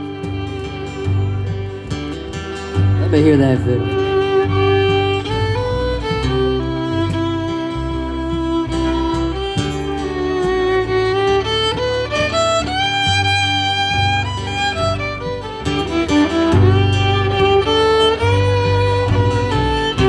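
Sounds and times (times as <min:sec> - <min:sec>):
acoustic guitar accompaniment: 0:00.0 - 0:20.0
fiddle solo: 0:00.0 - 0:20.0.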